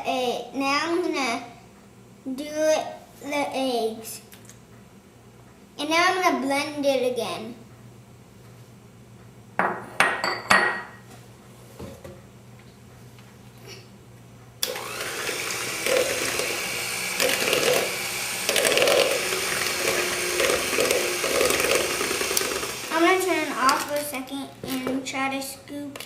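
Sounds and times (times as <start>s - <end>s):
electric blender running: 14.6s - 23.9s.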